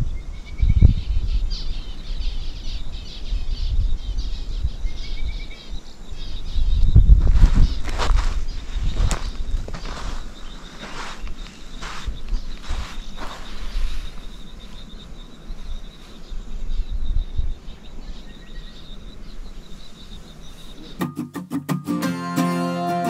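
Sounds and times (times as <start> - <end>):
wind on microphone: 0.0 - 20.6
plucked acoustic guitar music: 21.0 - 23.0.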